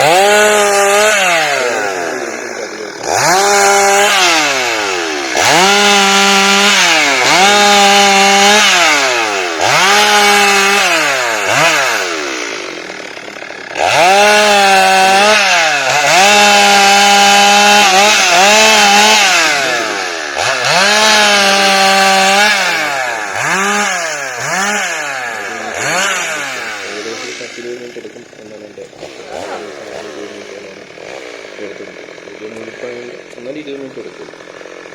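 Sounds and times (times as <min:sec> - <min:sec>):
chainsaw revving while cutting wood: 0:00.0 - 0:34.9.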